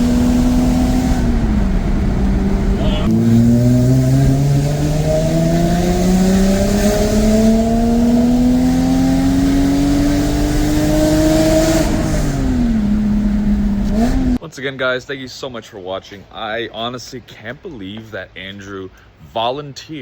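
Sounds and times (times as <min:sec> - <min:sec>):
car engine accelerating: 0:00.0 - 0:14.4.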